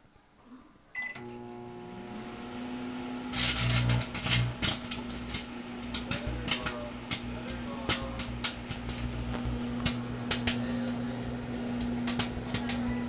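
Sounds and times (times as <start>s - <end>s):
microwave keypad beep: 1.0s - 1.4s
microwave oven humming: 1.0s - 13.0s
crackling and snapping sparks: 3.3s - 12.9s.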